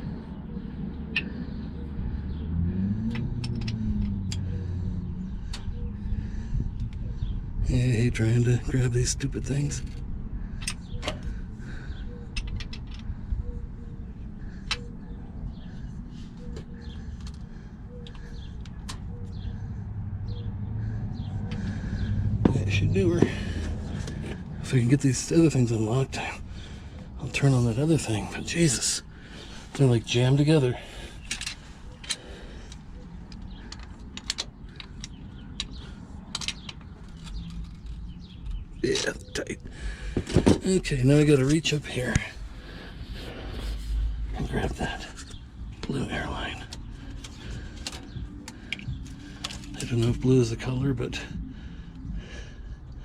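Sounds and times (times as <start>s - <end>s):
low background rumble: 0.0s - 53.0s
metal tool clicks and taps: 3.1s - 4.5s, 31.3s - 38.6s.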